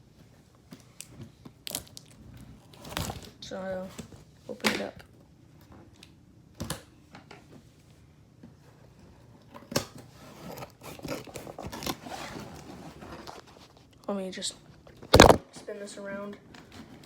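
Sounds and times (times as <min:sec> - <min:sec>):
package scraping and rustling: 0:10.1 - 0:13.9, 0:14.9 - 0:15.4
package clicks: 0:15.1 - 0:15.4.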